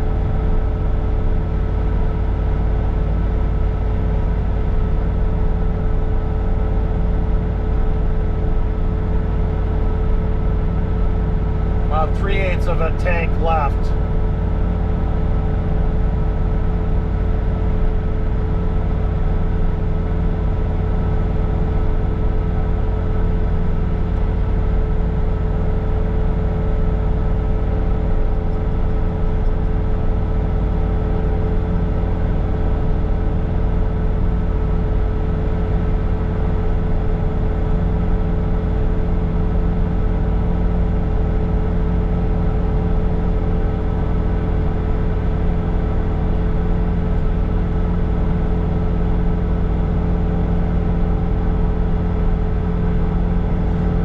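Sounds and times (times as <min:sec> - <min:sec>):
diesel engine droning: 0:11.5 - 0:14.1, 0:51.1 - 0:54.0
steady whine: 0:11.8 - 0:14.0.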